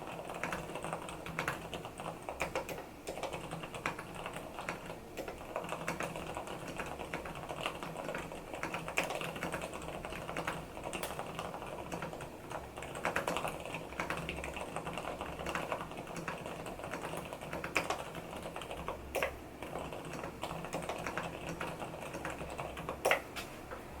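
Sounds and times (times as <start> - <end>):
fast keyboard typing: 0.0 - 23.3.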